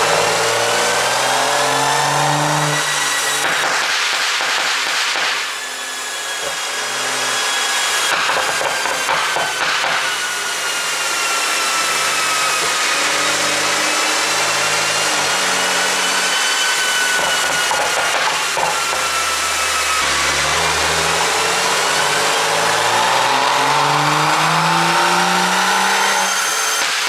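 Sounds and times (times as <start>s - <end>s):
car engine and exhaust running: 0.0s - 27.0s
high whine: 10.0s - 26.9s.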